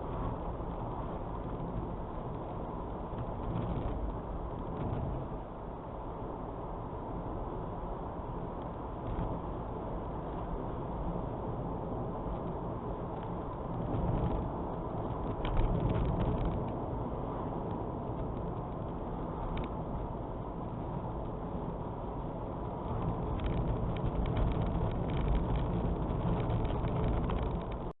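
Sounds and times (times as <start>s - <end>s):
wind buffeting microphone: 9.0s - 27.9s.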